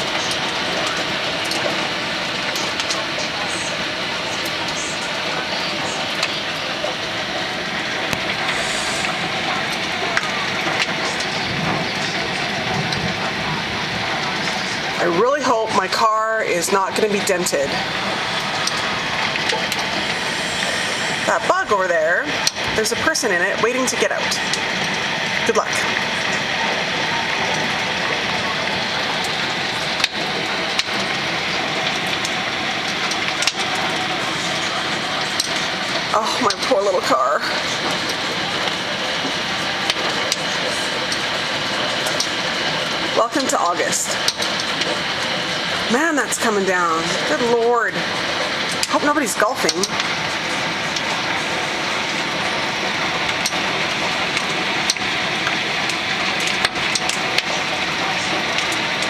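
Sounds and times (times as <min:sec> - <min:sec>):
hailstones cracking: 0:00.0 - 0:59.0
heavy hail pelting down: 0:00.0 - 0:59.0
hailstones clicking on hard surface: 0:47.0 - 0:59.0.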